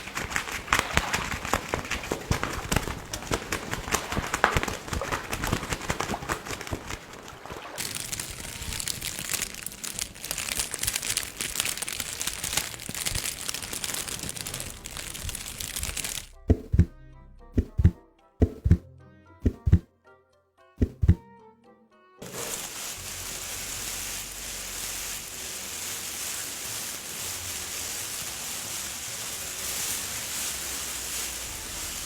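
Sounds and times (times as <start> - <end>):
dense crackling and crumpling: 0.0 - 16.9, 22.2 - 32.0
faint music: 0.0 - 32.0
heavy thumps: 16.3 - 17.0, 17.6 - 18.8, 19.5 - 19.9, 20.8 - 21.2.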